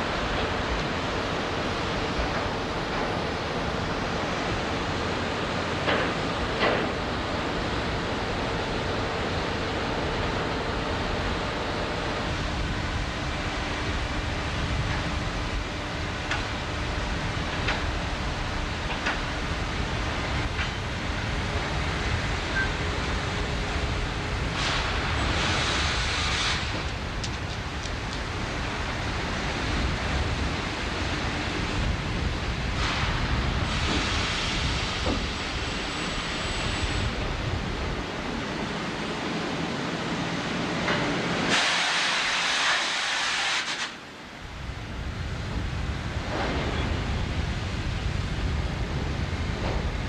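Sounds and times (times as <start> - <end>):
roaring plant machinery: 0.0 - 50.0
brief loud hiss: 41.5 - 44.0.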